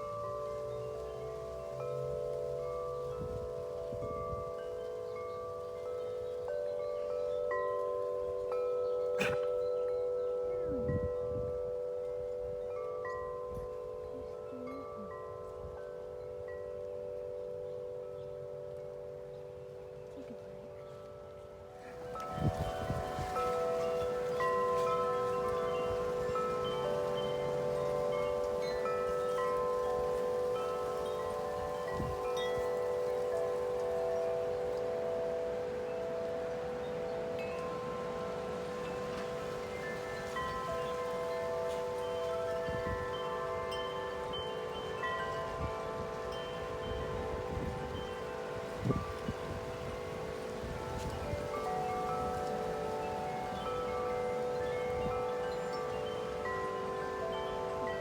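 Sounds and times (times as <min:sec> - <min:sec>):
wind rumble on microphone: 0:00.0 - 0:05.8, 0:10.6 - 0:12.6, 0:21.8 - 0:58.0
wind chimes ringing: 0:00.0 - 0:58.0.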